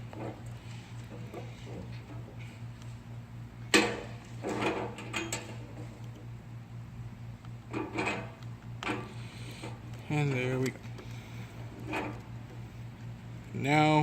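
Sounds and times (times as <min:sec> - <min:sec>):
steady low hum: 0:00.0 - 0:14.0
small metal parts scraping and rattling: 0:04.4 - 0:06.0.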